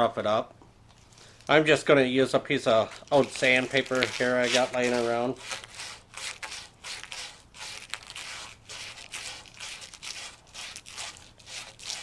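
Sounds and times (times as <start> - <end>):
sandpaper rasping on copper pipe: 3.2 - 12.0.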